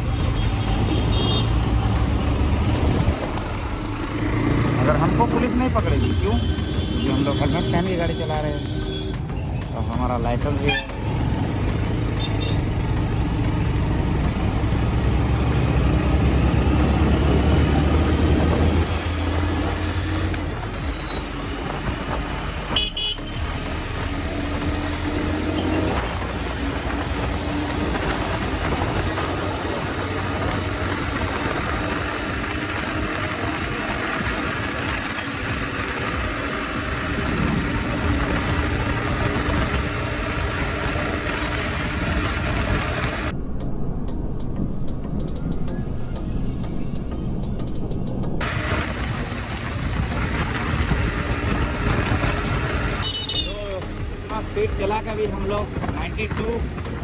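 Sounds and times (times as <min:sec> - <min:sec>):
motorcycle engine running: 0:00.0 - 0:07.7, 0:10.7 - 0:43.3, 0:46.7 - 0:57.0
wind and road noise: 0:00.0 - 0:57.0
vehicle horn toot: 0:00.2 - 0:01.6, 0:05.9 - 0:09.3, 0:10.6 - 0:11.0, 0:12.2 - 0:12.7, 0:22.7 - 0:23.4, 0:52.9 - 0:53.8.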